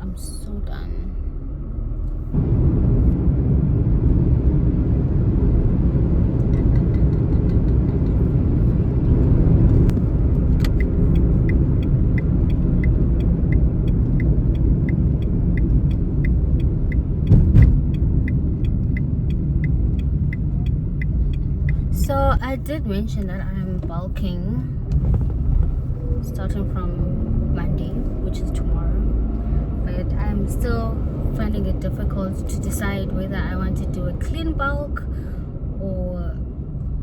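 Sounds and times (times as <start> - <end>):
road and engine rumble: 0.0 - 37.0
regular ticking: 9.8 - 27.3
short thump: 17.3 - 18.0, 24.8 - 26.1.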